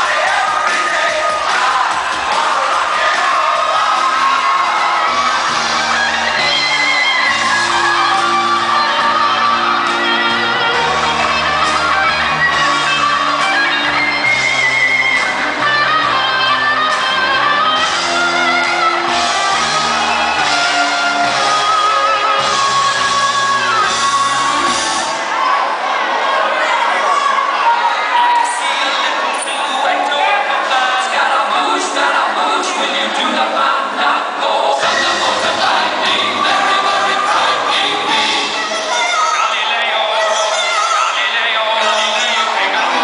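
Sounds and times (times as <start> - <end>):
rock music with loud guitar: 0.0 - 25.2, 34.8 - 38.9.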